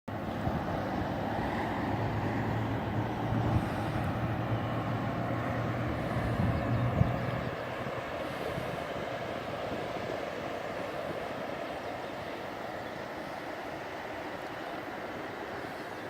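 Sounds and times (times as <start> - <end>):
sea water rushing: 0.1 - 16.0.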